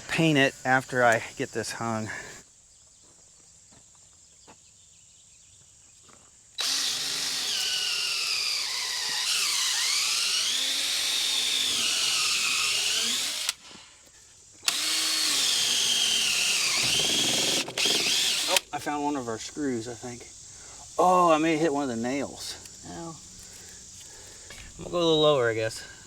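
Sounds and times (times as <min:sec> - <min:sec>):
power drill drilling into wood: 0:06.6 - 0:14.0, 0:14.6 - 0:18.7.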